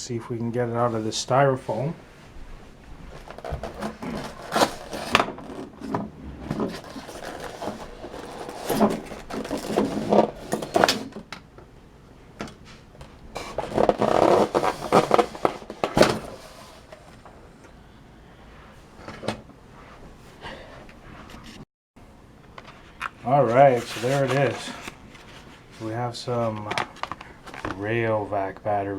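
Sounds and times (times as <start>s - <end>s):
styrofoam and plastic toy scraping: 3.1s - 11.1s, 13.4s - 17.1s, 23.2s - 26.2s.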